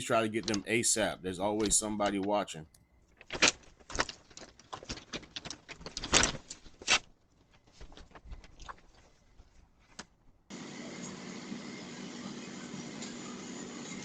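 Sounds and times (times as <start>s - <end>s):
objects being handled: 1.6s - 10.5s.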